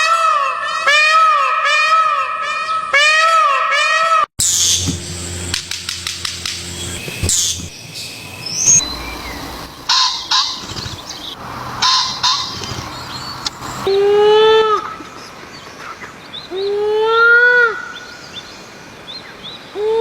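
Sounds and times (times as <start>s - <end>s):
bird calls: 4.4s - 14.0s.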